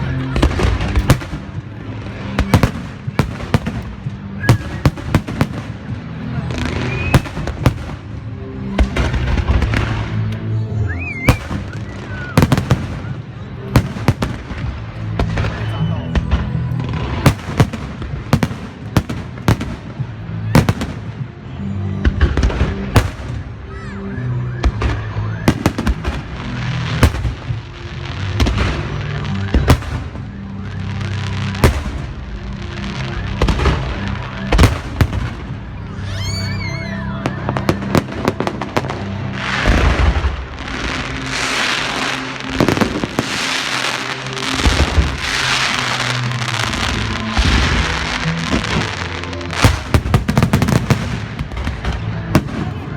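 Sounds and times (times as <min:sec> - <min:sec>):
fireworks bangs and crackling: 0:00.0 - 0:52.9
music: 0:00.0 - 0:52.9
whistling rockets: 0:02.4 - 0:05.7, 0:06.4 - 0:08.0, 0:10.8 - 0:14.4, 0:20.5 - 0:26.3, 0:33.0 - 0:40.4.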